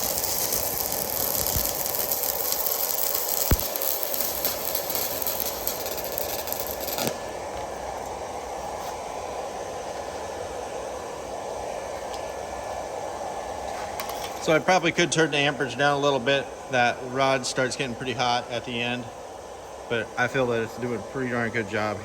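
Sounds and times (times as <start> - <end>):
welding arc crackling: 0.0 - 8.2
high hiss: 0.0 - 22.0.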